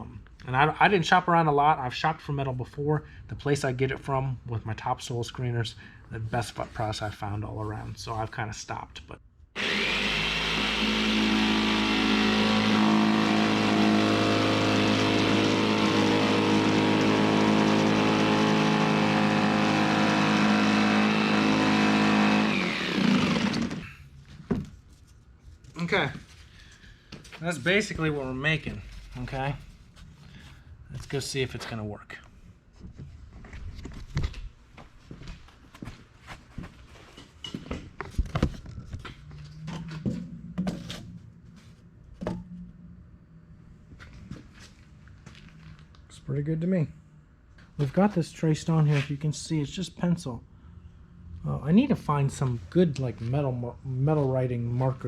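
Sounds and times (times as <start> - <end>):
motor running: 9.6 - 23.9.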